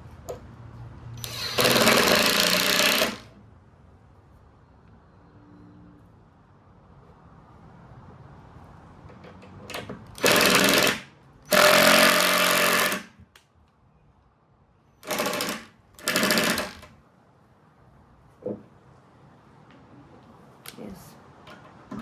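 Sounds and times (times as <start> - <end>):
impact driver hammering: 1.2 - 3.3, 10.2 - 13.1, 15.0 - 16.8.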